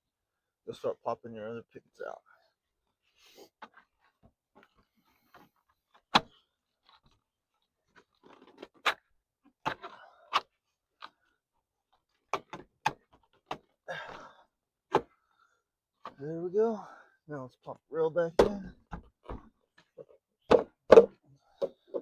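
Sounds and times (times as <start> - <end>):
fence board knocking: 18.4 - 19.0.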